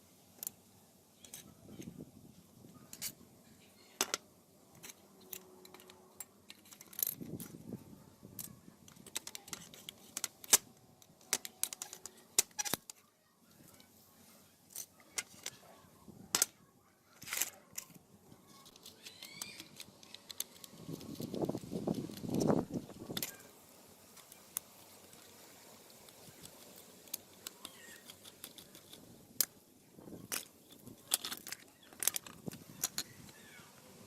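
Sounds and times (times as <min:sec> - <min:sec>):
metal parts clinking: 0:02.9 - 0:03.2, 0:04.0 - 0:07.6, 0:08.3 - 0:13.0, 0:14.7 - 0:15.6, 0:17.2 - 0:23.5, 0:25.9 - 0:33.4.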